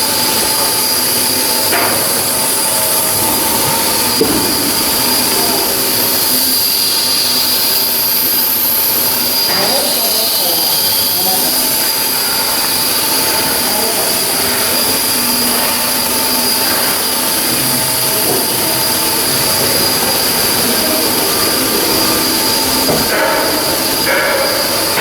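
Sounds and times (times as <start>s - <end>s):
high machine whine: 0.0s - 25.0s
machinery hiss: 0.0s - 25.0s.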